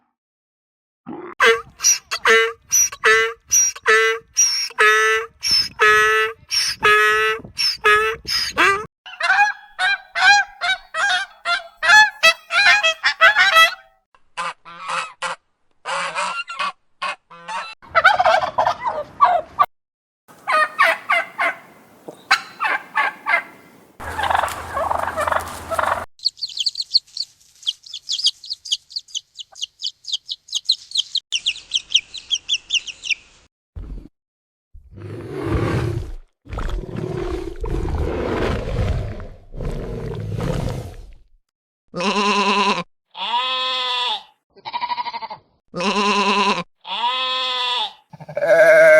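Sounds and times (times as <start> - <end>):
animal honking calls: 1.4 - 4.2, 20.4 - 26.1
harsh animal calls: 20.4 - 26.1, 45.8 - 48.9.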